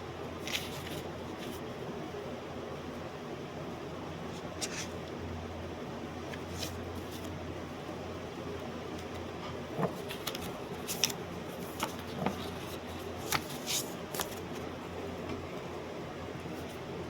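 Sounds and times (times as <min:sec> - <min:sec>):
low hum and hiss: 0:00.0 - 0:17.0.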